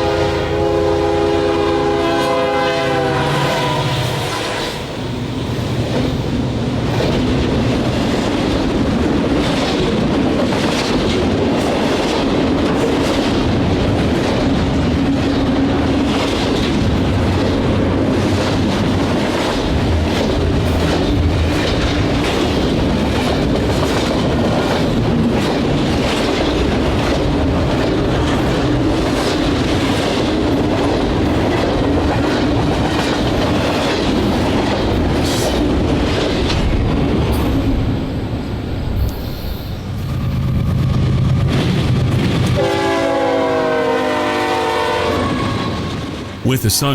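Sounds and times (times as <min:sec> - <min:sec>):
train wheels clicking on rails: 0:05.6 - 0:37.9.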